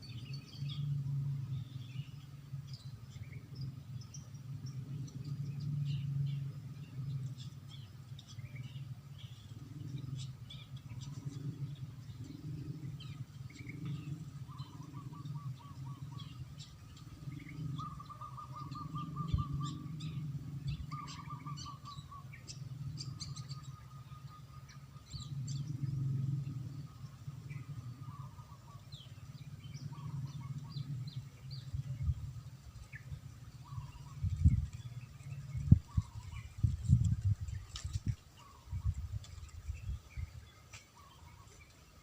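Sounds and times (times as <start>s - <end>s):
low pulsing hum: 0.0s - 42.0s
rapid trilling animal call: 9.5s - 32.0s.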